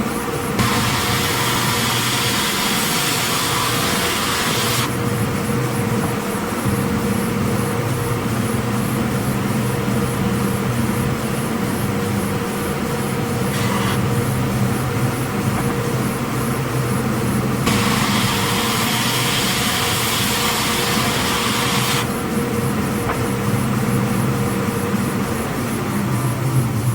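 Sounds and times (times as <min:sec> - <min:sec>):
higher sanding hiss: 0:00.0 - 0:09.0, 0:12.2 - 0:26.6
belt sander humming: 0:00.6 - 0:07.5, 0:12.7 - 0:25.3.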